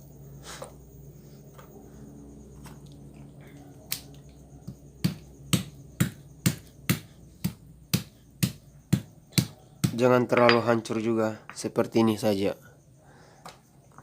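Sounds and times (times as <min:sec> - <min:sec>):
ginger being smashed with knocks: 0:03.9 - 0:10.7.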